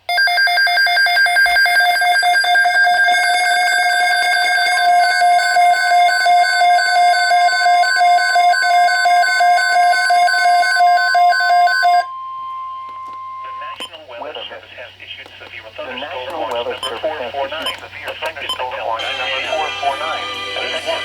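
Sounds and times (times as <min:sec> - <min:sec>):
steady single-pitch alarm tone: 0:00.1 - 0:13.8.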